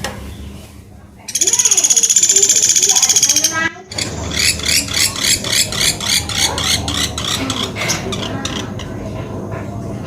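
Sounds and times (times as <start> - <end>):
steady low hum: 0.0 - 10.0
bird chirping sharply: 1.3 - 7.5.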